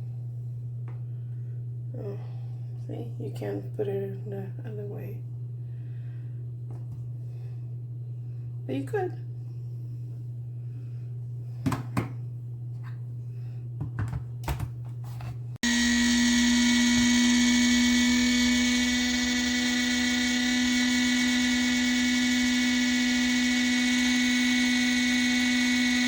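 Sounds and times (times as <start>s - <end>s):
low steady hum: 0.0s - 15.6s
electric motor high-pitched whine: 15.6s - 26.0s.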